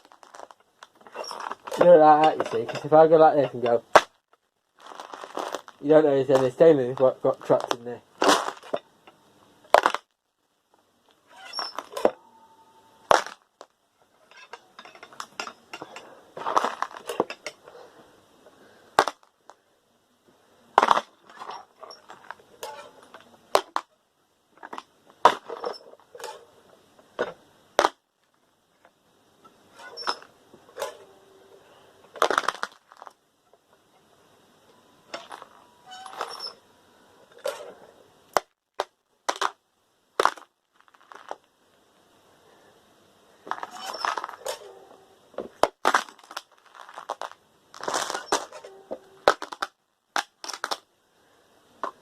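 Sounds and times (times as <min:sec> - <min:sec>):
metal screws clattering: 0:00.2 - 0:03.8, 0:14.2 - 0:17.6.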